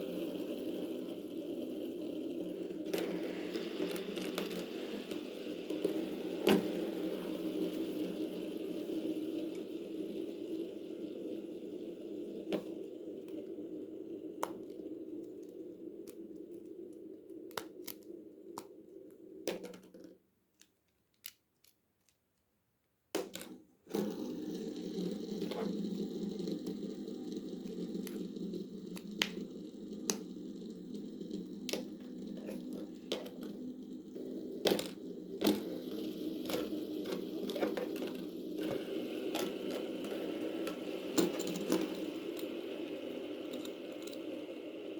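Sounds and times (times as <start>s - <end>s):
plastic toy clicks and crinkling: 19.5s - 22.4s.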